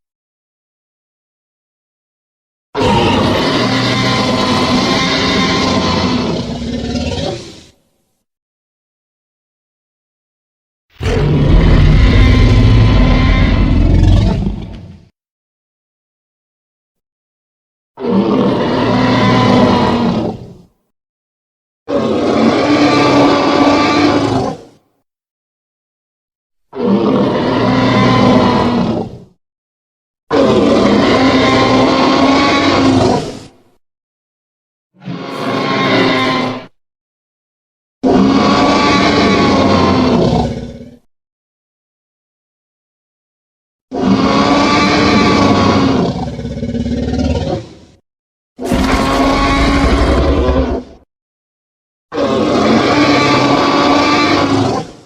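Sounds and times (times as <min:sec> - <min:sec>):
dinosaur roar: 0:02.8 - 0:07.8, 0:11.0 - 0:15.1, 0:18.0 - 0:20.6, 0:21.9 - 0:24.7, 0:26.7 - 0:29.3, 0:30.3 - 0:33.5, 0:35.0 - 0:36.8, 0:38.0 - 0:41.1, 0:43.9 - 0:47.8, 0:48.6 - 0:51.1, 0:52.1 - 0:55.0.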